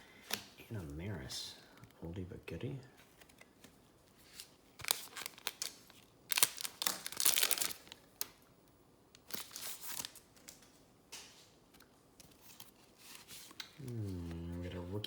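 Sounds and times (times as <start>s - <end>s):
wrapper crinkling and tearing: 4.3s - 8.4s, 9.2s - 10.6s.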